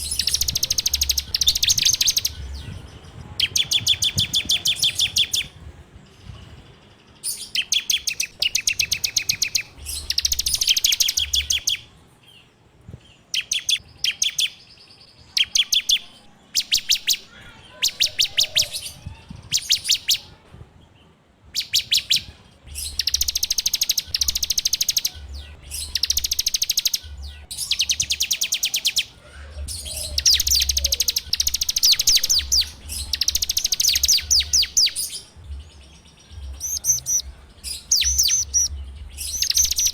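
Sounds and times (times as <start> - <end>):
bird singing rattling trills: 0.0 - 5.6, 7.2 - 11.8, 21.6 - 29.1, 29.7 - 39.9.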